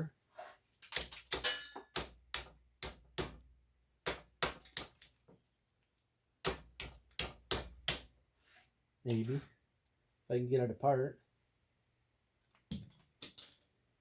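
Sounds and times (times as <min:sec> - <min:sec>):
hammer striking metal part: 0:01.3 - 0:03.4.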